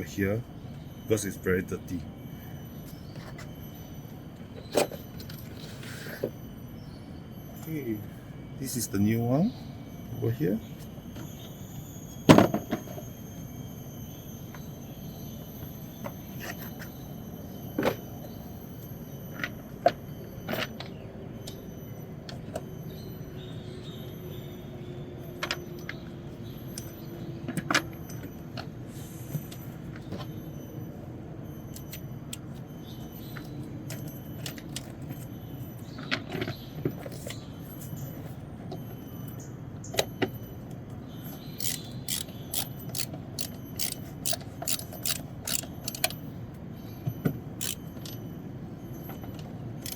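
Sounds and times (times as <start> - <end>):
steady low hum: 0.0 - 49.9
plastic parts clicking and knocking: 41.6 - 46.2, 47.2 - 48.2, 49.4 - 49.9.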